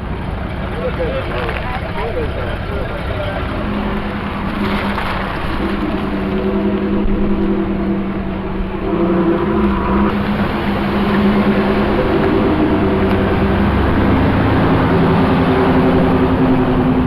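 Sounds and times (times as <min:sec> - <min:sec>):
car engine and exhaust drone: 0:00.0 - 0:17.0.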